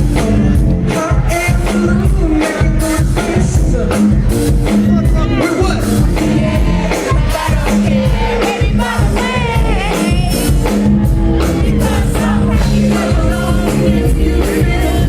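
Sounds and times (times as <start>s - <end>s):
live pop music with heavy bass: 0.0s - 15.0s
person singing: 11.7s - 15.0s.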